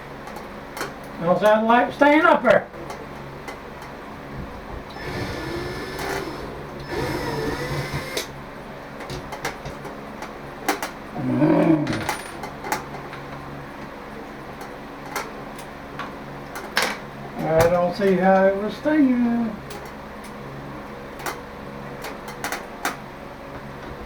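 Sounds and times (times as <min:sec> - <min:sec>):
cordless drill whining: 0:04.9 - 0:08.3.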